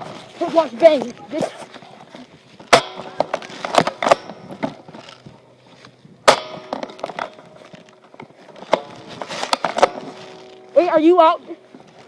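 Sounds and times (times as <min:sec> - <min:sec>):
pellets striking: 0:02.6 - 0:05.1, 0:06.2 - 0:12.0.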